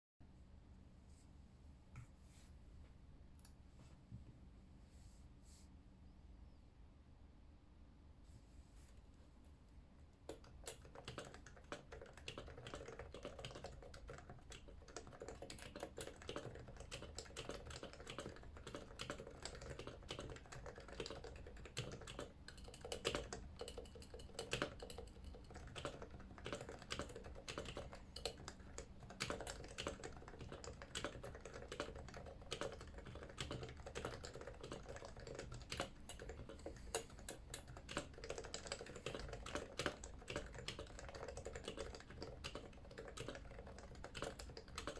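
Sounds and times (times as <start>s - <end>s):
fast keyboard typing: 10.3s - 44.9s.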